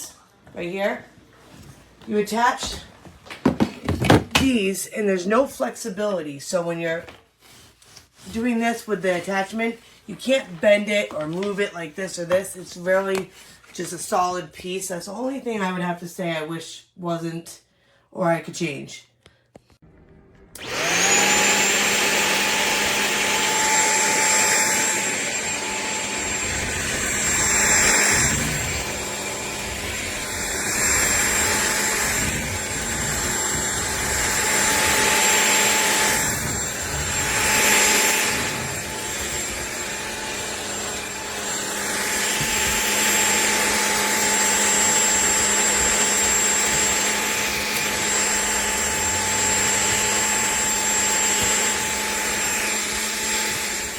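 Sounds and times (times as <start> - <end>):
vacuum motor whine: 19.9 - 53.9.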